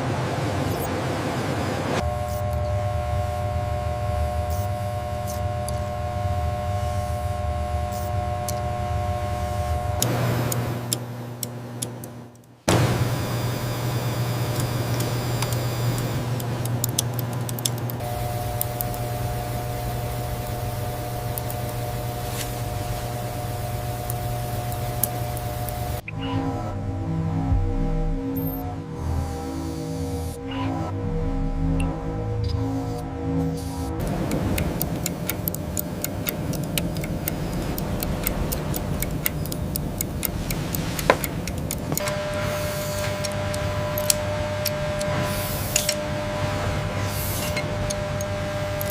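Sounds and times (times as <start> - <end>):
low machine hum: 0.0 - 48.9
steady mechanical rumble: 0.0 - 48.9
higher steady tone: 2.0 - 11.5, 18.0 - 26.0, 34.0 - 48.9
light ticks and clicks: 14.5 - 26.0, 34.0 - 42.1, 47.9 - 48.9.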